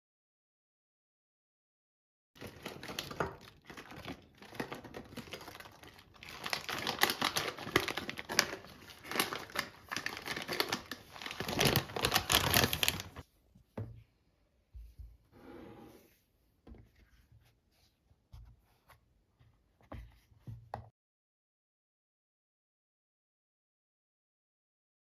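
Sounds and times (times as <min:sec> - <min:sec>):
thin material crinkling: 0:02.4 - 0:13.2.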